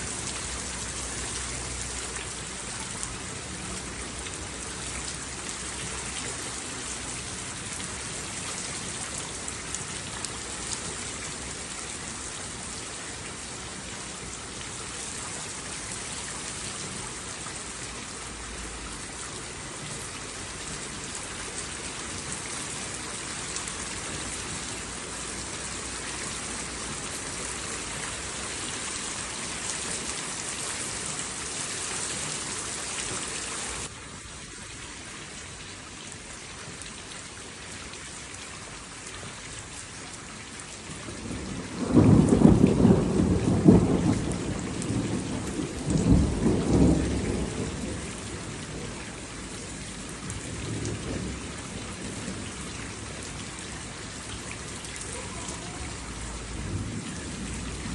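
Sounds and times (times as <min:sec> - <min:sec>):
steady rain: 0:00.0 - 0:57.9
thunder rolling: 0:41.2 - 0:48.6.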